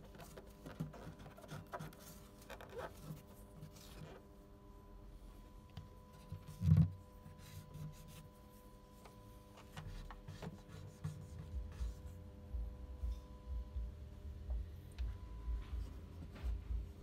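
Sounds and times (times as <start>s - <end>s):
light rubbing and scraping: 0.0s - 4.4s
faint steady hum: 0.0s - 17.0s.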